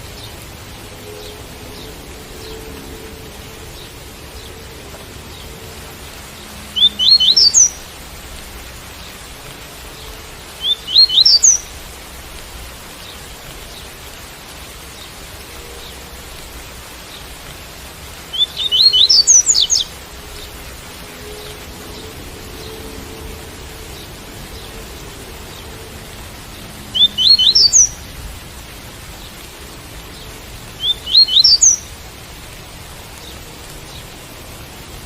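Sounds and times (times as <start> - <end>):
rain hiss: 0.0 - 35.0
bird singing: 1.0 - 7.9, 10.0 - 11.8, 18.2 - 20.6, 26.8 - 28.1, 30.1 - 31.9.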